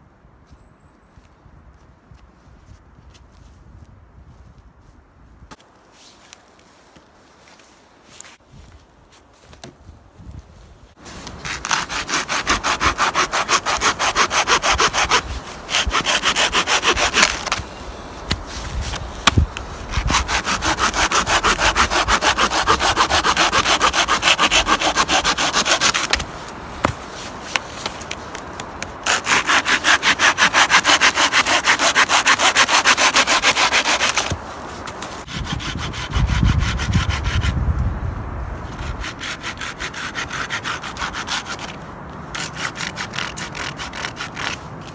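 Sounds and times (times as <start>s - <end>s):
hand saw cutting wood: 11.2s - 17.7s, 18.3s - 27.0s, 29.0s - 37.6s, 38.7s - 41.8s, 42.4s - 44.6s.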